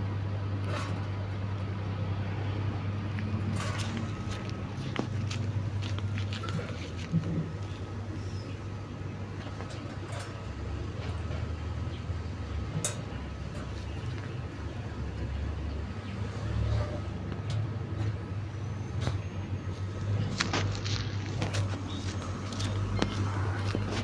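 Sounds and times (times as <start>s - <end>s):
fan humming and whining: 0.0s - 24.0s.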